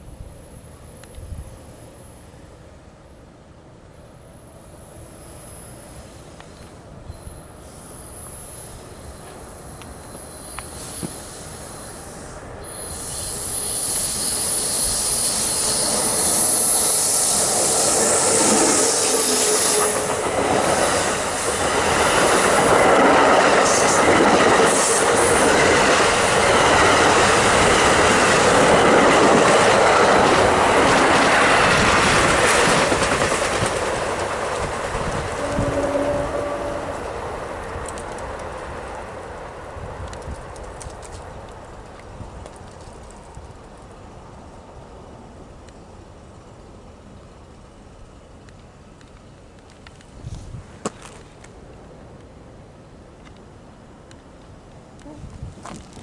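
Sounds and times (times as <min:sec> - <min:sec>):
train passing on rails: 0:00.0 - 0:56.0.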